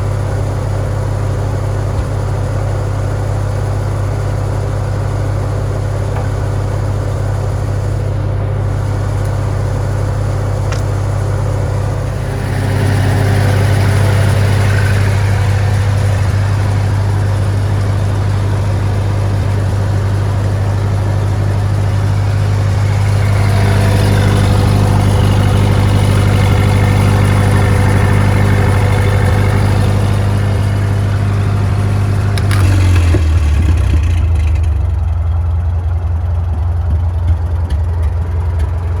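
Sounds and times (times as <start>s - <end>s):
tractor engine running: 0.0s - 39.0s
board edger cutting: 8.8s - 34.6s.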